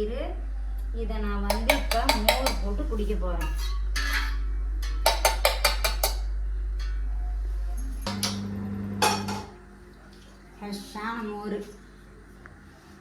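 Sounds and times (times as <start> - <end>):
steady low hum: 0.0 - 13.0
metal spoon clinking on vessel: 1.5 - 2.6
utensils knocking: 1.5 - 2.7, 4.8 - 6.3.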